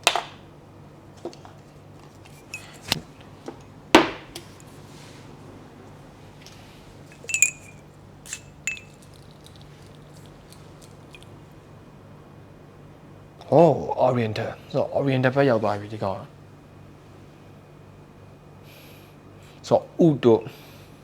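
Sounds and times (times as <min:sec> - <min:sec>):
ringing glass clinks: 0:02.4 - 0:02.9, 0:07.1 - 0:09.0
clicks of bottle and cap: 0:06.4 - 0:11.3.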